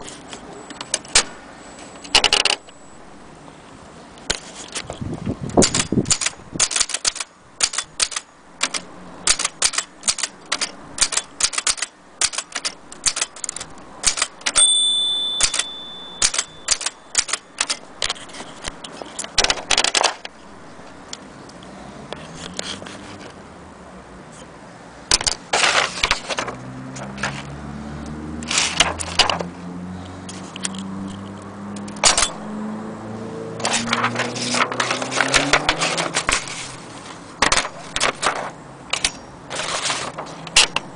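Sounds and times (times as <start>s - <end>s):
typewriter keys striking: 5.6s - 14.7s, 15.3s - 18.2s
typewriter bell ring: 14.5s - 17.7s.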